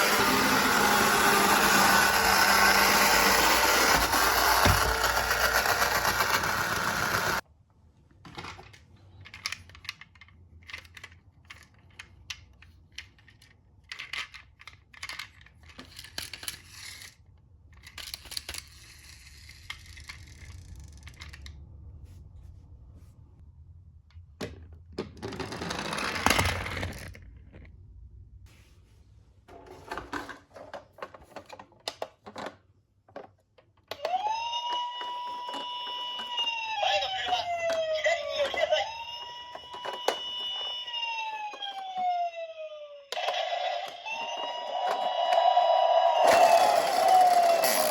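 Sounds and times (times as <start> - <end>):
electronic toy siren: 0.0 - 7.4, 33.9 - 47.9
toy cars clicking and rattling: 0.0 - 7.4, 8.4 - 21.6, 25.1 - 27.6, 43.2 - 47.9.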